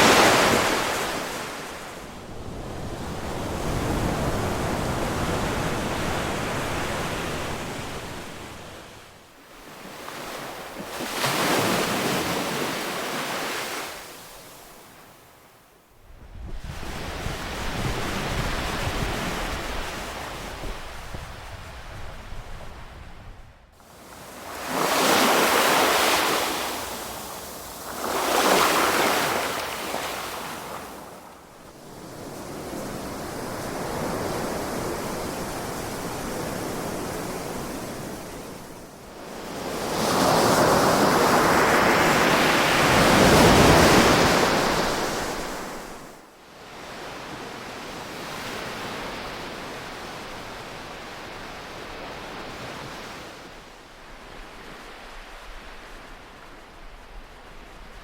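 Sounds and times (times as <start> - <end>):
ocean waves breaking: 0.0 - 8.9, 9.5 - 14.8, 23.8 - 38.8, 39.4 - 46.2.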